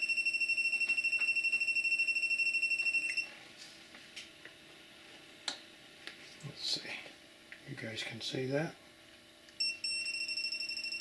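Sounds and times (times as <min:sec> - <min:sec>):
rapid high-pitched beeping: 0:09.6 - 0:11.0.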